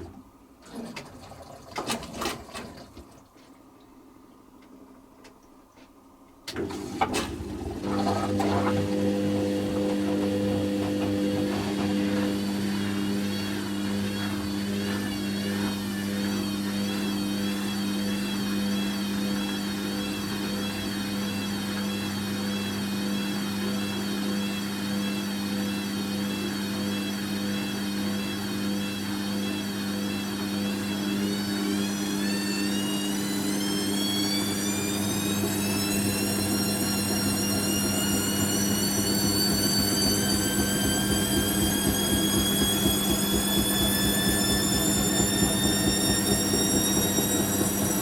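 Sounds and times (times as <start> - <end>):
drain pump hum: 6.5 - 18.1, 32.0 - 48.0
washing machine drum motor whine: 6.5 - 48.0.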